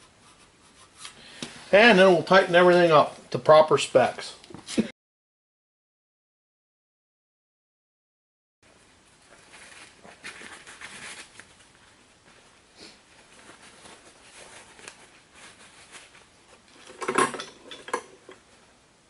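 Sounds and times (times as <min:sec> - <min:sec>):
metal tools clinking: 0:16.8 - 0:18.4.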